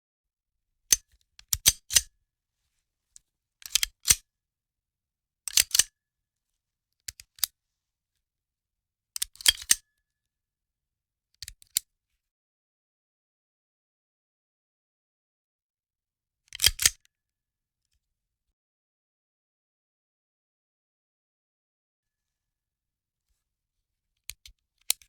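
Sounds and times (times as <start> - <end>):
handgun metallic clicks: 3.6 - 4.2.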